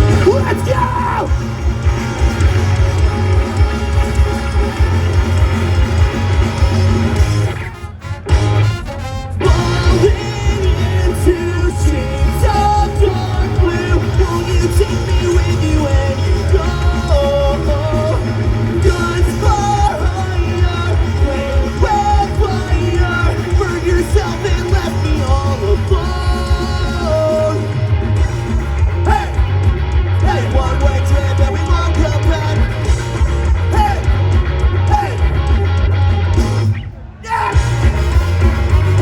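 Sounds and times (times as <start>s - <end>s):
pulsing bass line: 0.0s - 36.9s, 37.5s - 39.0s
live rock band: 0.0s - 39.0s
person singing: 9.4s - 27.8s.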